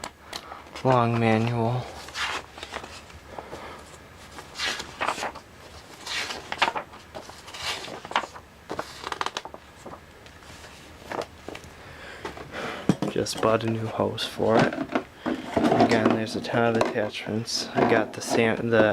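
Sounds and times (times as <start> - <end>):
paper pages flipping: 0.7 - 11.7.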